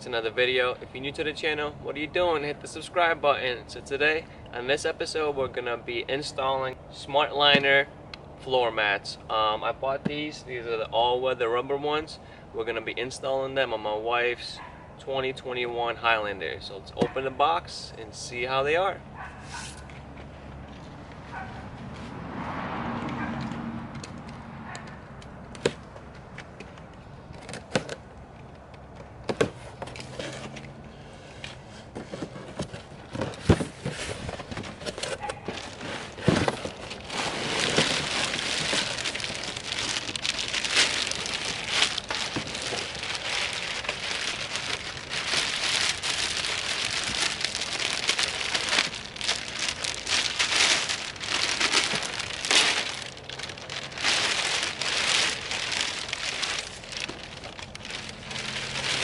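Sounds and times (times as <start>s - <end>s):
plastic packaging crinkling: 34.7s - 59.0s.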